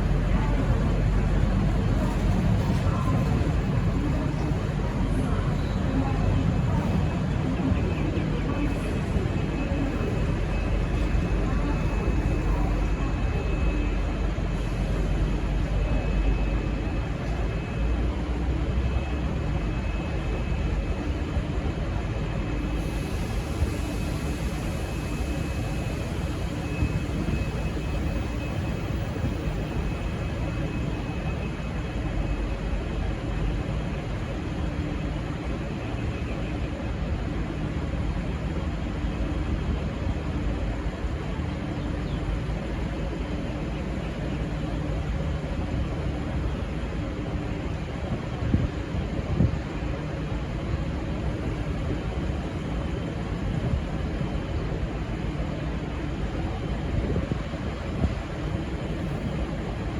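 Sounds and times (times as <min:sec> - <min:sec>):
diesel train rumbling: 0:00.0 - 0:59.9.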